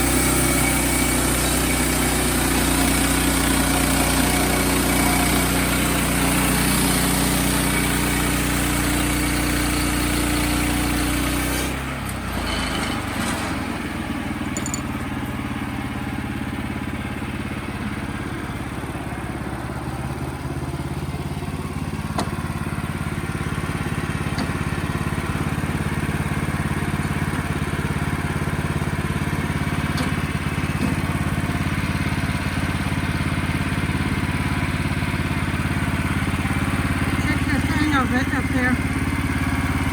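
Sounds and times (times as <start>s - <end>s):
engine running: 0.0s - 39.9s.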